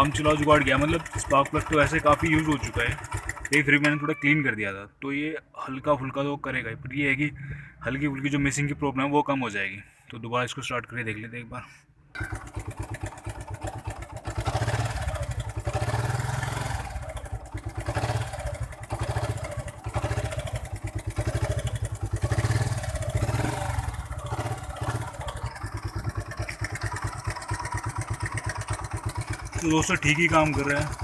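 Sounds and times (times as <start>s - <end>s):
motorcycle engine revving: 0.0s - 3.8s, 12.2s - 31.0s.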